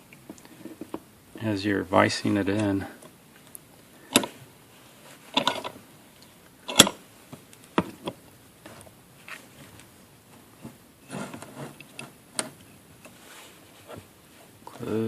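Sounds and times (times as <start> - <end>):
metal tools clicking and knocking: 6.7 - 7.0.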